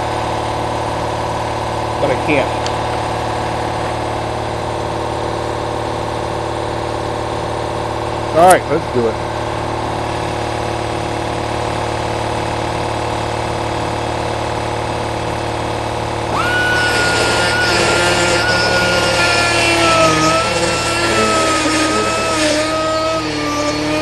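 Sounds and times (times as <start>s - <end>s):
air compressor running: 0.0s - 24.0s
air grinder whining: 7.6s - 24.0s.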